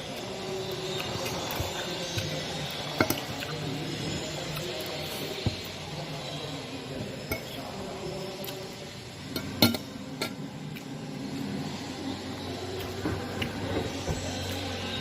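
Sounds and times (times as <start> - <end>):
low background hum: 0.0 - 15.0
tableware clinking: 9.3 - 10.4.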